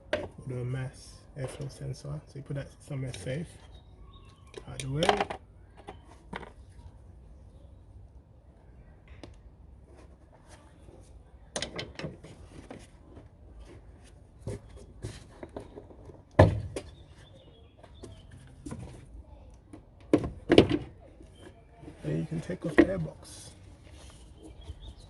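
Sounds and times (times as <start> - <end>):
plastic parts clicking and knocking: 4.4 - 6.6.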